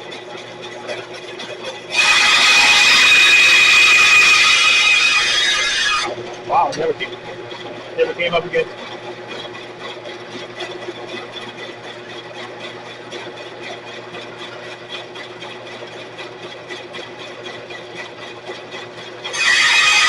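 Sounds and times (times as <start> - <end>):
bandsaw motor hum: 0.0 - 20.0
loud harsh sound: 1.9 - 6.2, 19.3 - 20.0.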